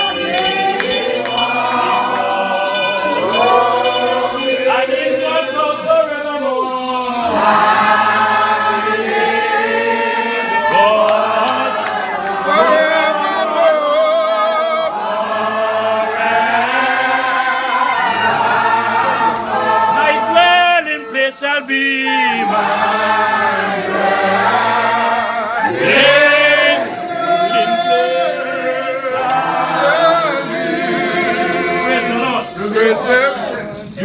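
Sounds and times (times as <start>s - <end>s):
congregation singing a hymn: 0.0s - 34.0s.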